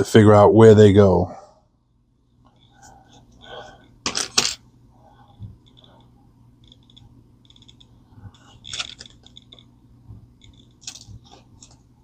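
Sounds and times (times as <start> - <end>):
plastic parts clicking and rustling: 6.6 - 9.7, 10.4 - 11.8.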